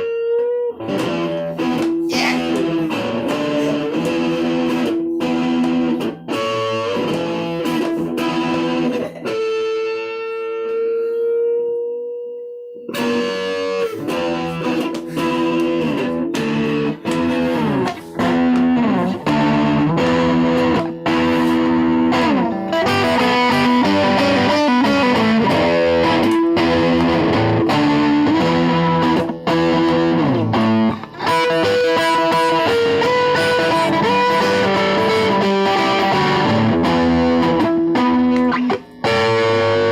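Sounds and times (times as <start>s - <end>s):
rock band playing: 0.8s - 10.8s, 12.9s - 39.9s
held electric guitar note: 0.8s - 29.2s.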